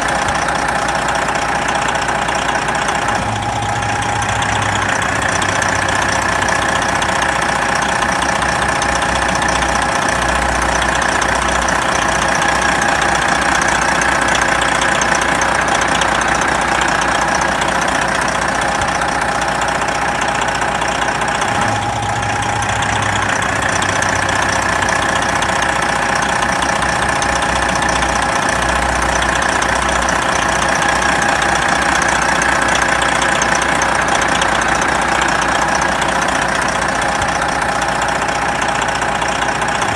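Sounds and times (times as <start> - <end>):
truck diesel engine idling: 0.0 - 39.9.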